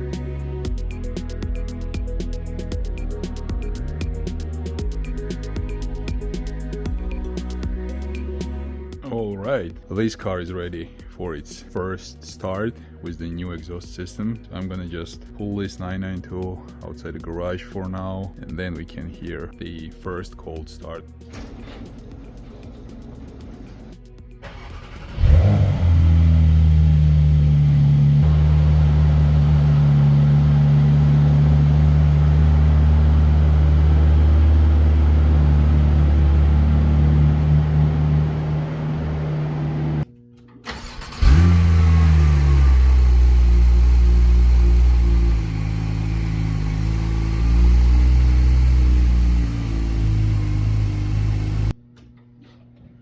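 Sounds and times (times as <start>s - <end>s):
car engine fast idle: 24.4s - 40.0s, 40.7s - 51.7s
car engine starting and revving: 24.4s - 40.0s, 40.7s - 51.8s.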